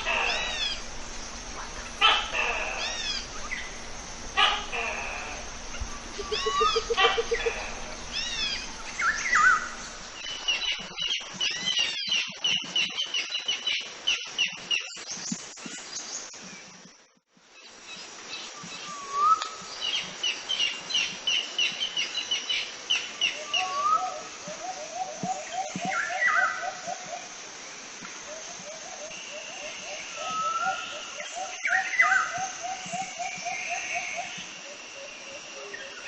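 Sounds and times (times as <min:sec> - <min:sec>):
small birds chirping: 0:00.0 - 0:16.5
outdoor background hiss: 0:00.0 - 0:36.0.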